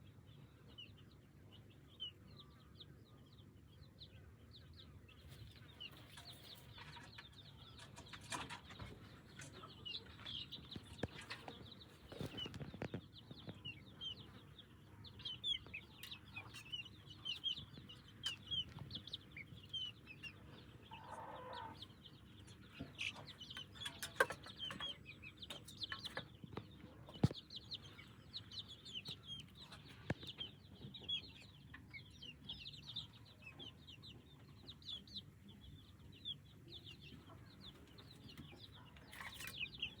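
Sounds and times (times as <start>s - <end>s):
chicks peeping: 0.0s - 40.0s
hen clucking: 5.6s - 35.2s.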